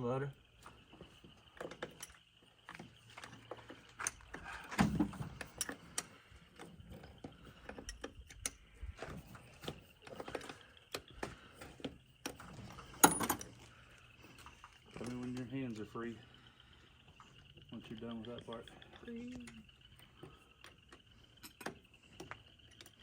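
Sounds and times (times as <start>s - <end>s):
metallic clicks and clanks: 12.2s - 13.6s.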